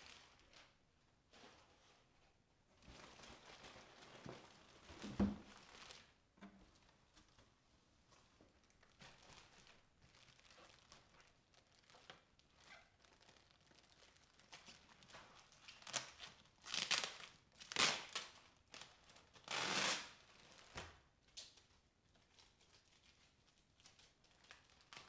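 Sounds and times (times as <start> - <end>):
packaging rustling and tearing: 8.6 - 20.8, 22.2 - 25.0.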